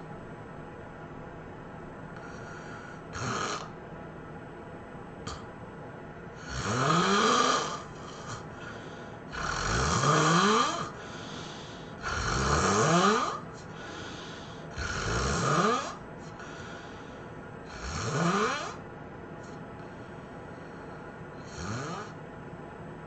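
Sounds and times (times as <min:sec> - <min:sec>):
person snoring loudly: 0:02.2 - 0:03.7, 0:06.4 - 0:16.6, 0:17.7 - 0:18.8, 0:21.4 - 0:22.2.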